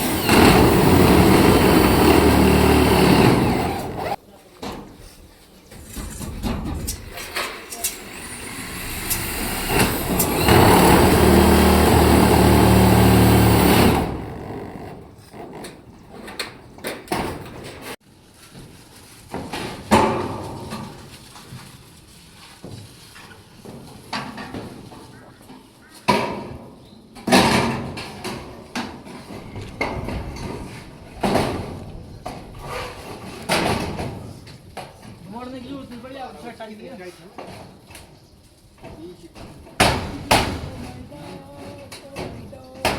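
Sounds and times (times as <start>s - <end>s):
power tool grinding steel: 0.0s - 4.2s, 7.6s - 15.8s.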